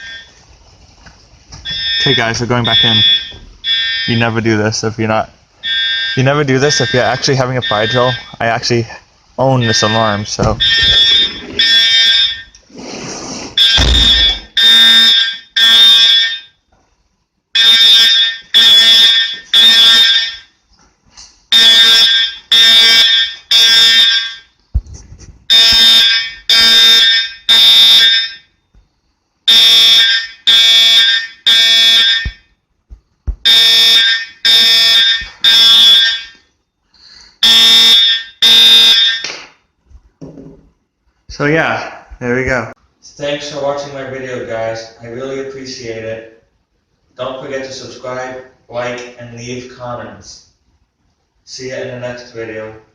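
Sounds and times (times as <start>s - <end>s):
fire alarm horn blasts: 0.0s - 0.4s, 1.6s - 4.4s, 5.6s - 8.3s, 9.6s - 12.6s, 13.6s - 16.6s, 17.6s - 20.6s, 21.5s - 24.6s, 25.5s - 28.6s, 29.5s - 32.6s, 33.4s - 36.5s, 37.4s - 39.3s.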